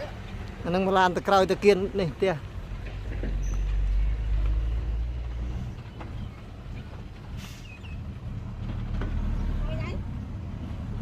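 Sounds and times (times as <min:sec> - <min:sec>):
diesel engine rumbling: 0:00.0 - 0:11.0.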